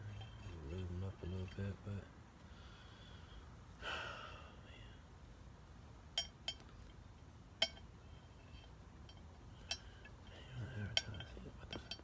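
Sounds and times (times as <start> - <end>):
small metal parts clinking: 7.6 - 12.0.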